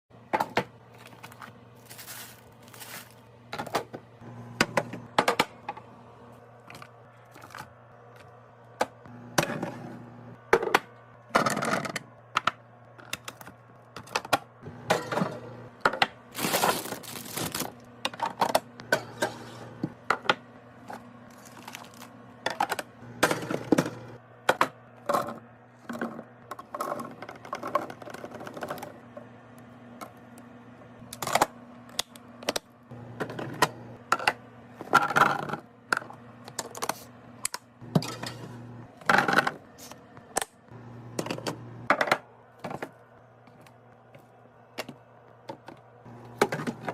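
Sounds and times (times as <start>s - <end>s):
food packages clacking and knocking: 0.2s - 5.8s, 10.5s - 19.2s, 19.8s - 28.9s
packaging rustling: 1.0s - 3.3s, 16.3s - 17.8s, 21.3s - 22.1s
steady low hum: 28.4s - 46.9s.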